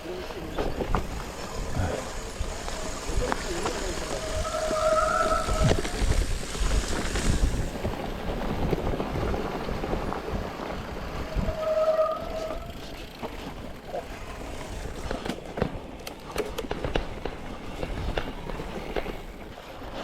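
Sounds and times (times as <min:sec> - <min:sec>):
bike clicks and rattles: 0:00.0 - 0:20.0
bike tyres rumbling over ground: 0:00.0 - 0:20.0
wind on microphone: 0:00.8 - 0:11.8.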